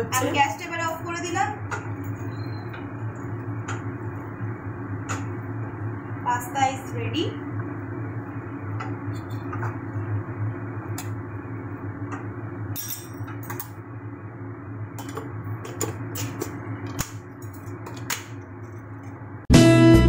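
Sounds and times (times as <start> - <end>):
low background hum: 0.0 - 19.5
utensils clinking against pans: 12.7 - 13.8.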